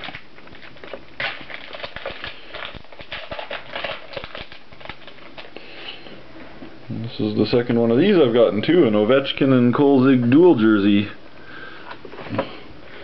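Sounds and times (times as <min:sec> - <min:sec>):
trading cards clicking and rustling: 0:00.0 - 0:05.5.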